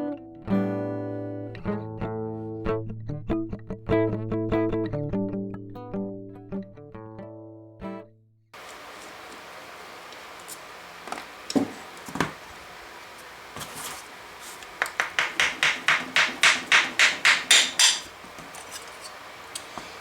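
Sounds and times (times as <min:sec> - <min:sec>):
sharp tapping or scraping strokes: 0:13.2 - 0:20.0
hand tool knocks: 0:14.7 - 0:18.4.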